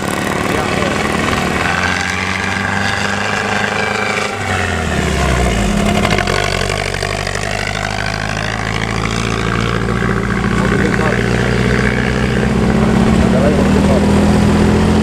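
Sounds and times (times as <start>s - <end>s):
diesel bus engine rumbling: 0.0s - 15.0s.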